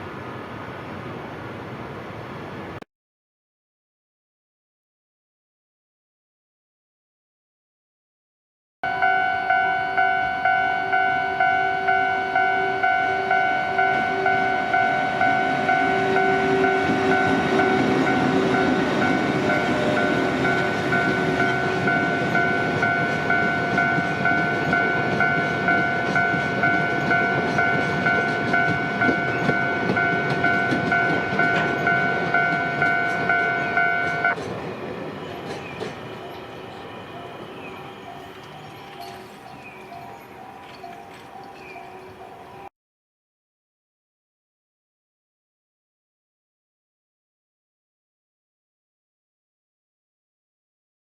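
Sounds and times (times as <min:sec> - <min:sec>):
train rumbling past: 0:00.0 - 0:02.8, 0:08.9 - 0:42.7
level-crossing alarm ringing: 0:08.8 - 0:42.7
train wheel clicks: 0:38.1 - 0:42.1.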